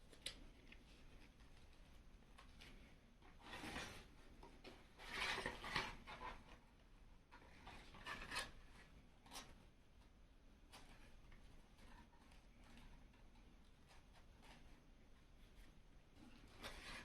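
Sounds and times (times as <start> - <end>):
cardboard rubbing and scraping: 4.9 - 6.6.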